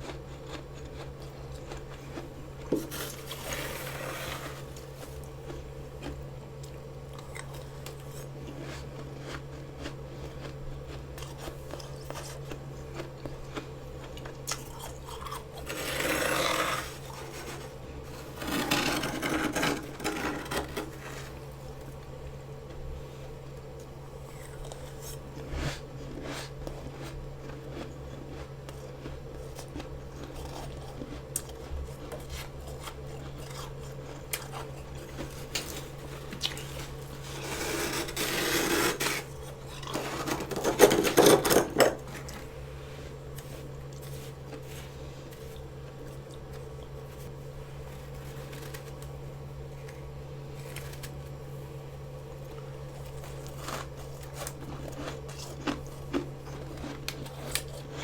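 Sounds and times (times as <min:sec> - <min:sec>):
metal utensil scraping frost: 0:02.8 - 0:05.3, 0:15.6 - 0:21.6, 0:35.2 - 0:43.2.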